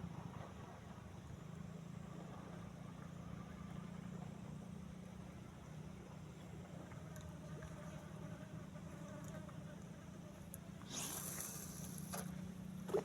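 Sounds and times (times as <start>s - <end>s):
low engine hum: 0.0s - 13.0s
faint hiss: 10.8s - 12.3s.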